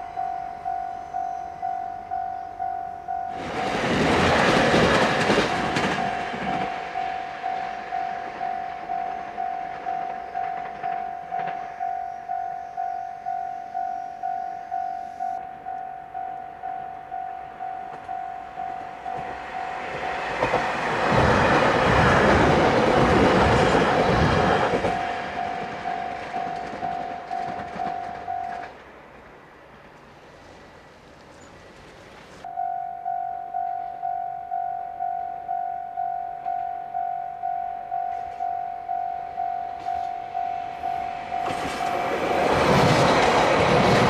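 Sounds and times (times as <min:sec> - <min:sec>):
level crossing bell clanging: 0:00.0 - 0:03.8, 0:05.1 - 0:20.6, 0:24.5 - 0:28.7, 0:32.5 - 0:42.4
train rushing past: 0:00.0 - 0:14.4, 0:15.2 - 0:31.0, 0:37.5 - 0:44.0
train wheel clatter: 0:03.3 - 0:12.0, 0:17.8 - 0:28.8, 0:40.8 - 0:44.0.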